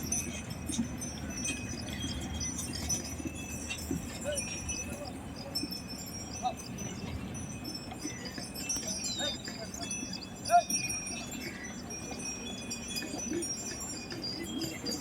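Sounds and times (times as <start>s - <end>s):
bells jingling on bullocks: 0.0s - 15.0s.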